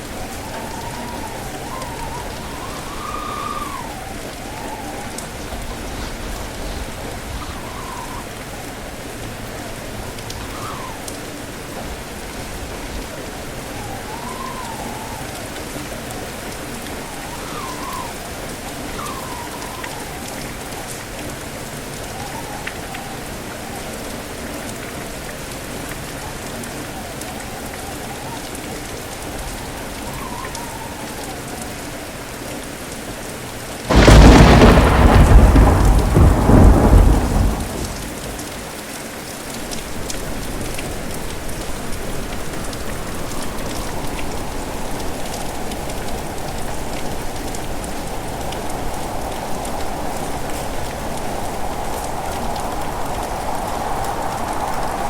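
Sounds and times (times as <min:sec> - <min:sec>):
steady heavy rain: 0:00.0 - 0:55.0
thunder clap rumbling: 0:33.9 - 0:38.7, 0:42.0 - 0:55.0.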